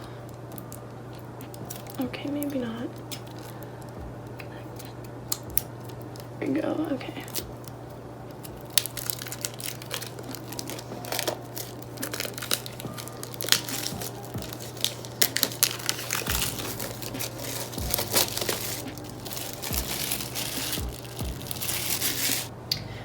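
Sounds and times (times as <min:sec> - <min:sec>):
plastic shrink-wrap crinkling: 0:00.0 - 0:22.5.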